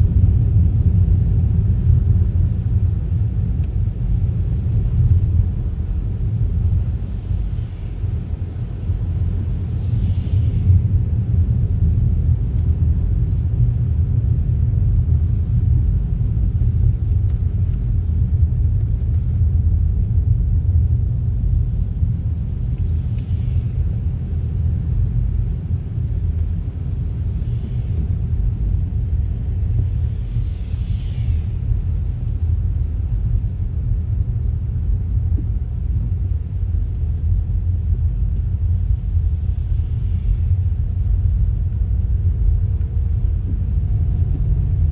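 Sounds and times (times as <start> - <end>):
tyre and engine rumble: 31.7 - 44.9.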